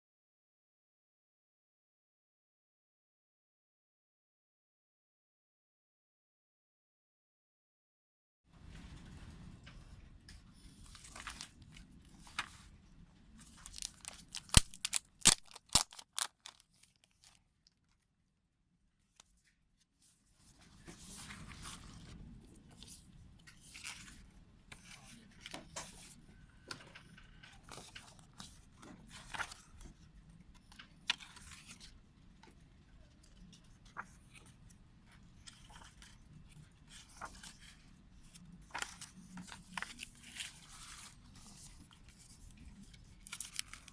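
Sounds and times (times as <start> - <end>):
plastic wrapping crinkling and tearing: 13.5 - 17.4.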